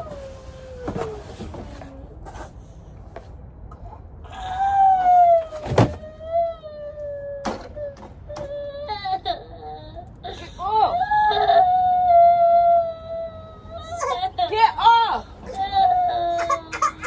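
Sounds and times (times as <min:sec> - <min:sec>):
young child wailing: 0:10.8 - 0:17.0.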